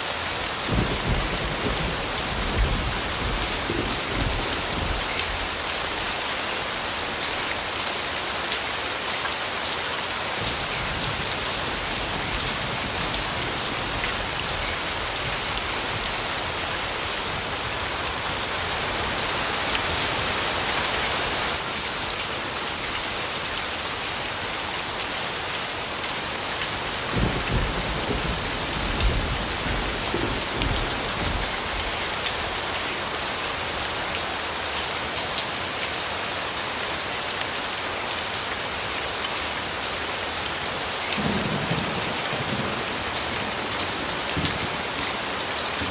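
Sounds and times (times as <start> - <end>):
steady rain falling: 0.0 - 45.9
low rumble of thunder: 0.7 - 5.1, 27.1 - 31.9.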